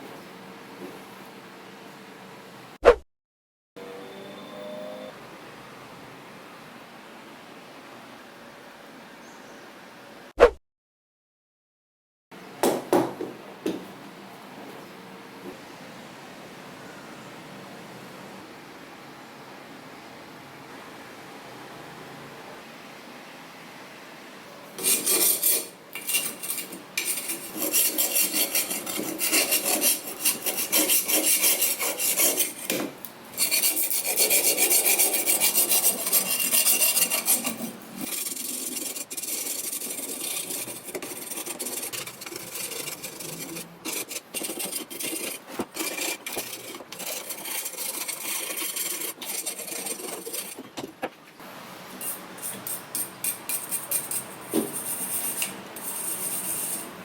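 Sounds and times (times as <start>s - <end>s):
wire brush scrubbing metal: 24.8s - 50.6s, 52.0s - 57.0s
hand scraping metal: 24.8s - 50.8s, 52.0s - 57.0s.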